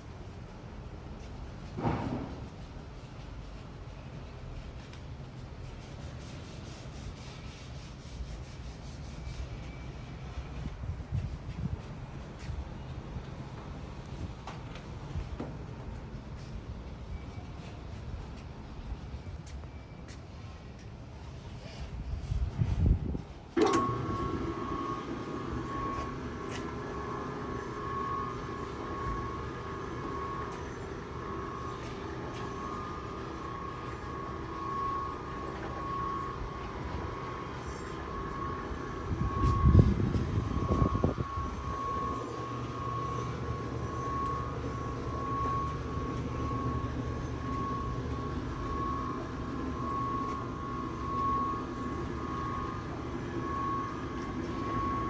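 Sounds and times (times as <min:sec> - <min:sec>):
noodle machine motor whining: 0:23.6 - 0:55.0.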